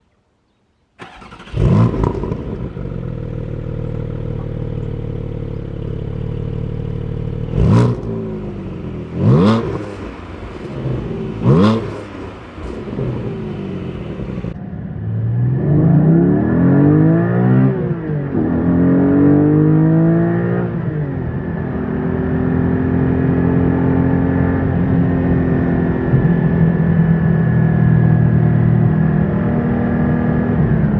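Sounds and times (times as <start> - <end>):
car engine starting and idling: 1.0 - 17.2
engine throttle blips: 1.0 - 18.7
engine accelerating: 1.0 - 30.9.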